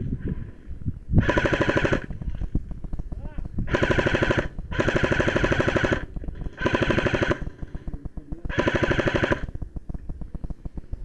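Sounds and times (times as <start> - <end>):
gun motor whine: 1.2 - 2.6, 3.6 - 7.9, 8.5 - 10.9
airsoft gun firing full-auto: 1.2 - 10.7.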